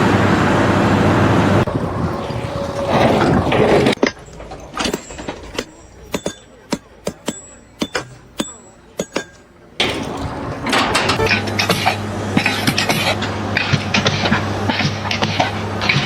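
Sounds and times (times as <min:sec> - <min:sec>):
loud even rumble: 0:01.5 - 0:05.6
sharp metallic clinks and knocks: 0:01.6 - 0:12.9.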